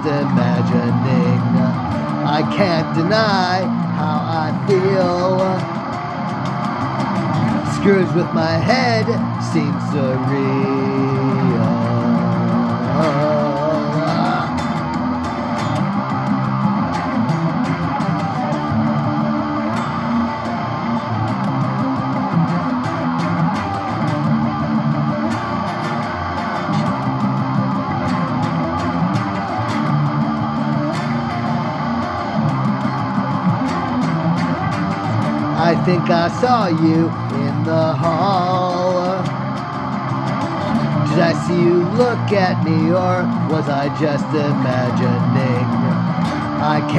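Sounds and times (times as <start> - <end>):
person singing: 0.0 - 6.3, 7.4 - 15.6, 35.5 - 46.9
guitars over bass: 0.0 - 46.9.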